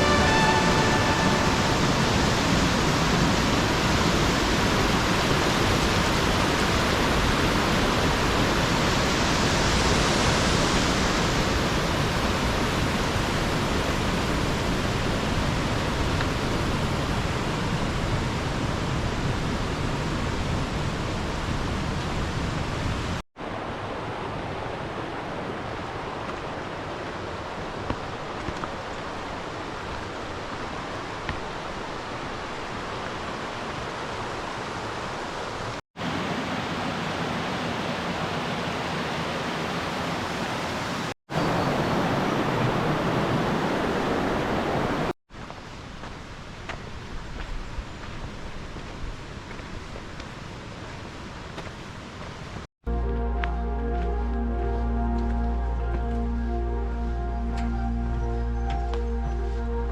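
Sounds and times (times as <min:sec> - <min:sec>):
waterfall rushing: 0:00.0 - 0:17.9.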